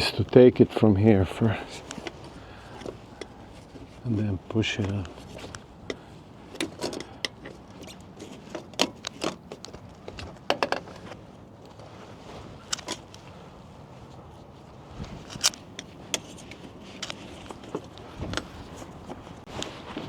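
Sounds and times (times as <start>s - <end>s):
metal parts and tools clicking: 12.7s - 13.2s, 15.2s - 17.5s.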